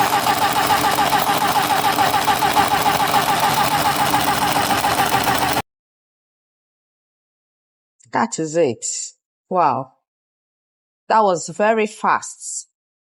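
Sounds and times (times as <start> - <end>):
mini sewing machine stitching: 0.0 - 5.6.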